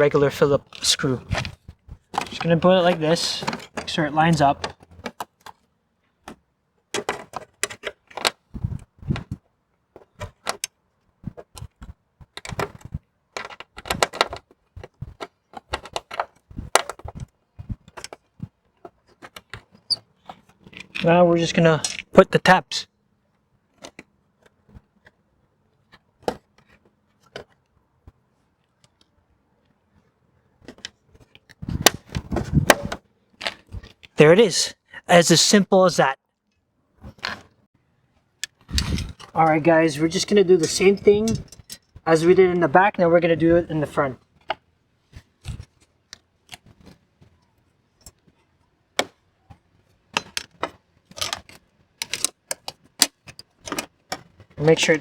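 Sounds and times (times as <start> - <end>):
small metal rattles: 0.0 - 22.2, 40.1 - 42.1, 49.0 - 55.0.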